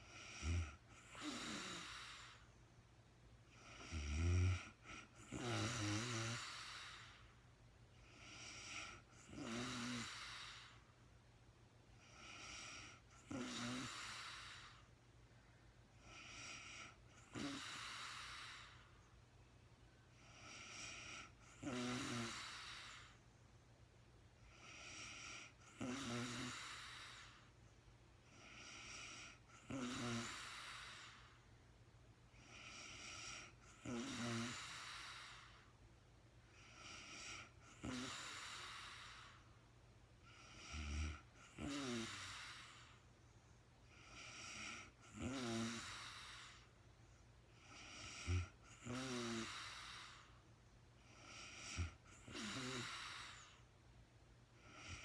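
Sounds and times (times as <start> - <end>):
woman snoring: 0.0 - 2.5, 3.5 - 7.3, 8.0 - 10.9, 12.0 - 14.9, 16.0 - 18.8, 20.3 - 23.2, 24.5 - 27.5, 28.3 - 31.4, 32.4 - 35.7, 36.6 - 39.4, 40.3 - 43.0, 44.0 - 46.7, 47.6 - 50.4, 51.1 - 53.6, 54.6 - 55.0.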